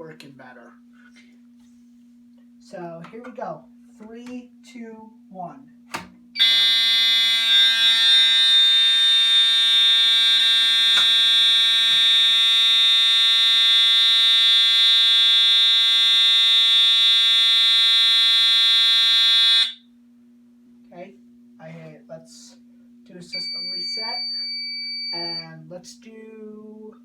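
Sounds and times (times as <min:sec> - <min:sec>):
steady fire alarm tone: 0:06.4 - 0:19.9, 0:23.2 - 0:25.6
faint low hum: 0:19.8 - 0:27.0.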